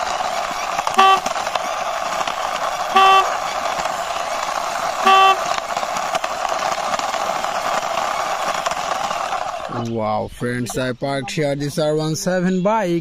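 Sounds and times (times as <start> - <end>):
short horn toots: 0.9 - 1.4, 2.9 - 3.4, 5.0 - 5.5.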